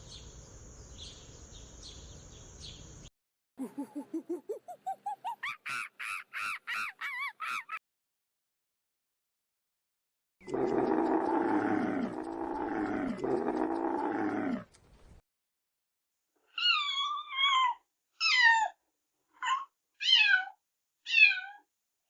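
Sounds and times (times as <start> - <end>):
low drawn-out animal call: 10.4 - 14.7.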